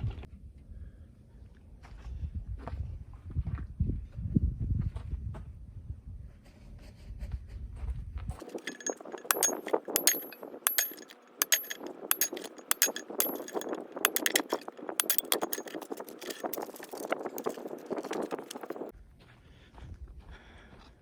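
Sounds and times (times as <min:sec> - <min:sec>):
small hard objects clinking: 0:08.4 - 0:18.9.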